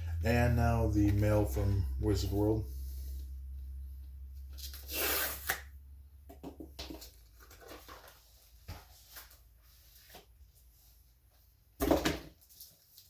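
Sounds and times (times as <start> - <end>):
packaging rustling: 7.0 - 9.4.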